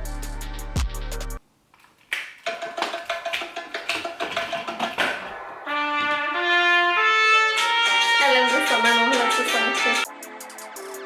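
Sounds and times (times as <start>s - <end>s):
recorded music: 0.0s - 11.0s
horn melody: 5.3s - 10.1s.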